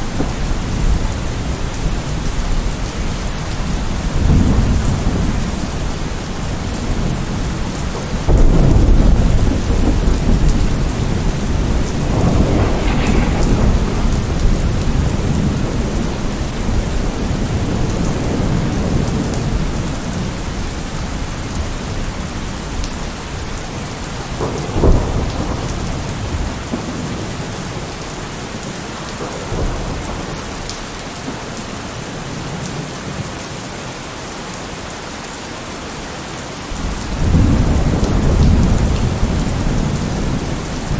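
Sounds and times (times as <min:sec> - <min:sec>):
thunder rumbling: 0:00.0 - 0:20.7, 0:23.3 - 0:27.9, 0:36.8 - 0:40.9
steady rain: 0:00.0 - 0:40.9
sharp thunder clap: 0:08.2 - 0:19.0.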